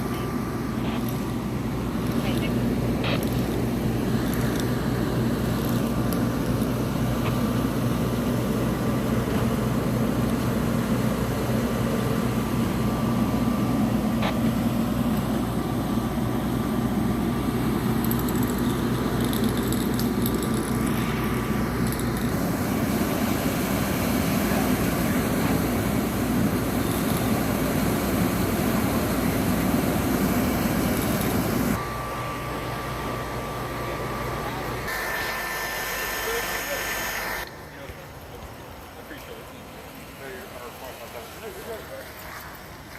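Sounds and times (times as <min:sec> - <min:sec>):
fire truck engine idling: 0:20.1 - 0:34.8.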